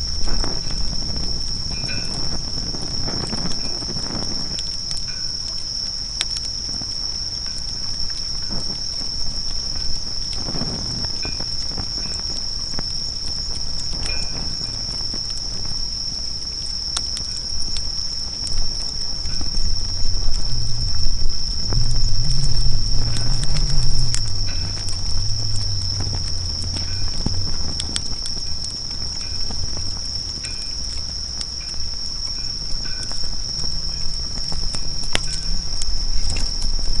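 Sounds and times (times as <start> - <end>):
low rumble: 0.0 - 4.6, 18.5 - 37.0
campfire crackling and popping: 0.0 - 37.0
insect trill: 0.0 - 37.0.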